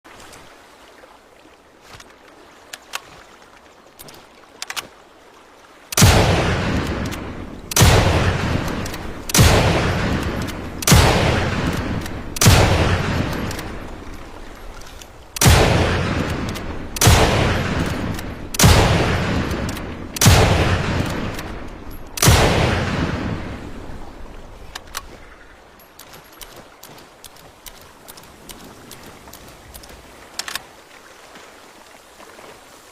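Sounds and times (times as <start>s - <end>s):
rifle shots with echo: 6.0s - 13.9s, 15.4s - 23.8s
faint clicks: 8.6s - 9.4s, 24.4s - 30.7s.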